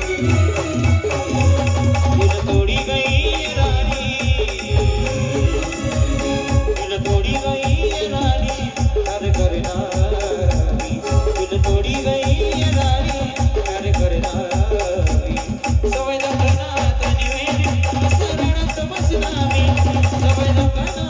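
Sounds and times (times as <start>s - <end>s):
wavering melody: 0.0s - 13.4s
heavy drum beats: 0.0s - 21.0s.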